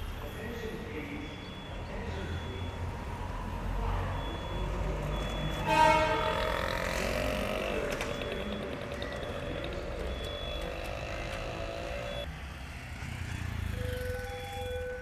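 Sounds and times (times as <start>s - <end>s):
road traffic: 0.0s - 15.0s
fire alarm siren tone: 4.1s - 12.3s, 13.7s - 15.0s.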